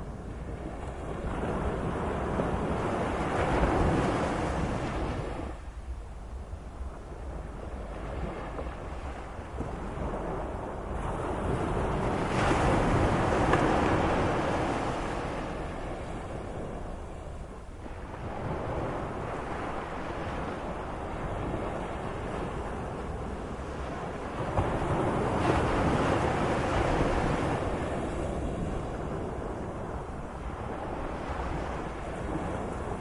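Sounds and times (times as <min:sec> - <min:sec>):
sea waves surf: 0:00.0 - 0:33.0.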